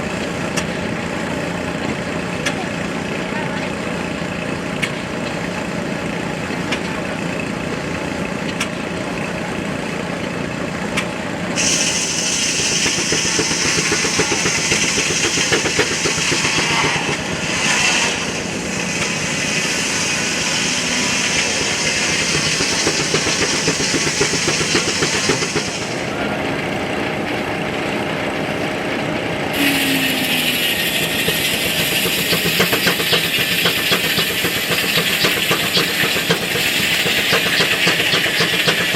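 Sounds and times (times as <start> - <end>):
steam engine and mill machinery: 0.0 - 38.9
loud steam hiss: 11.6 - 26.1, 29.5 - 38.9.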